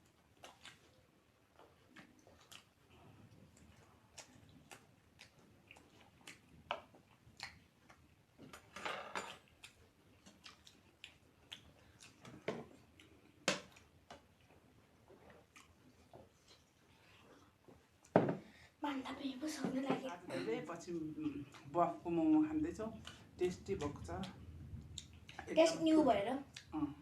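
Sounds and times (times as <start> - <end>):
person chewing food: 0.0 - 8.7, 9.3 - 18.1, 22.9 - 25.5, 26.5 - 27.0.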